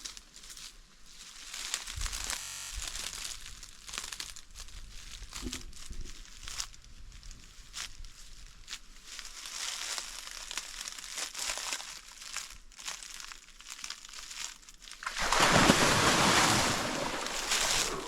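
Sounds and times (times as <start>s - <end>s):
footsteps crunching dry vegetation: 3.1s - 18.0s
loud rushing splash: 15.0s - 18.0s.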